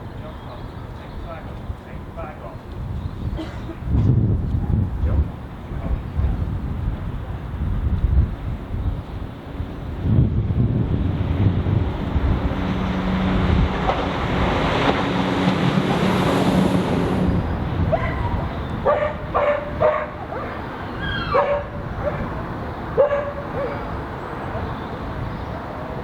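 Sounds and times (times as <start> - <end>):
passing train rumble: 0.0 - 26.0
low engine hum: 2.6 - 26.0
dog barking: 17.9 - 20.6, 21.3 - 22.3, 23.0 - 23.9.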